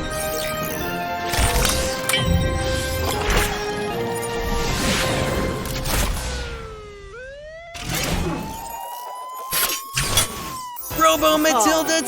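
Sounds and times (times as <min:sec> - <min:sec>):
background music: 0:00.0 - 0:06.8.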